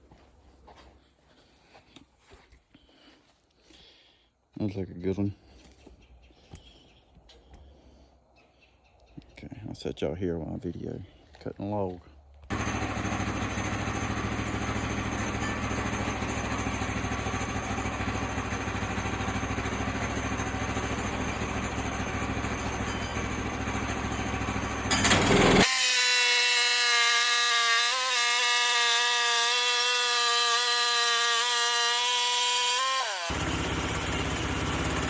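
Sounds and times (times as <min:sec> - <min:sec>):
saw blade whining through log: 0:12.5 - 0:35.0
sawmill engine humming: 0:12.5 - 0:35.0.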